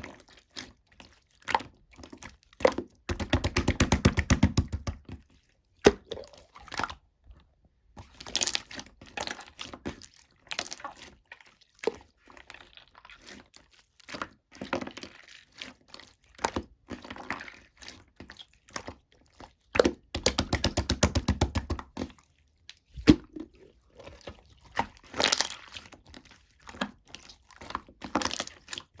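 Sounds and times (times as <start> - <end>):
slime popping and squelching: 19.8 - 22.1, 22.9 - 28.9.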